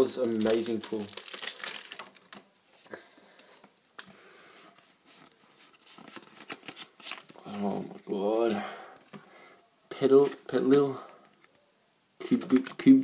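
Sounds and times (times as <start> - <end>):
foil wrapper crinkling: 0.1 - 2.5
cards clicking and rustling: 5.8 - 7.7, 12.2 - 13.0.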